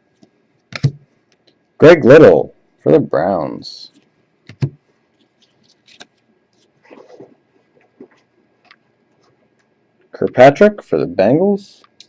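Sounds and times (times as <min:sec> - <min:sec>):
cards rustling: 0:05.2 - 0:08.3.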